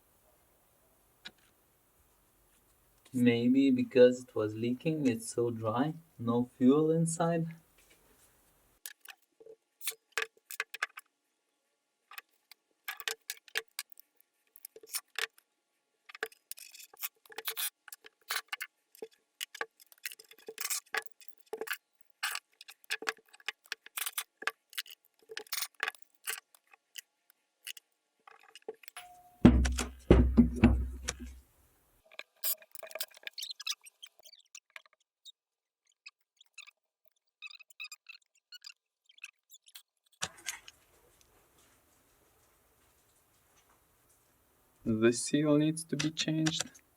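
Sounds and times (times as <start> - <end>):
loud knocks with deep thump: 29.4 - 31.4.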